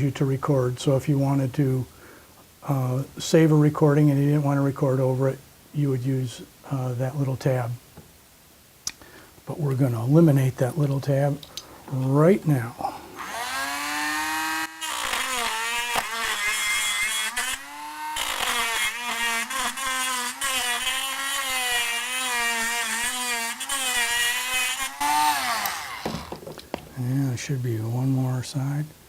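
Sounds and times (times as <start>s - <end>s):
rotary tool cutting plastic: 13.2s - 26.7s.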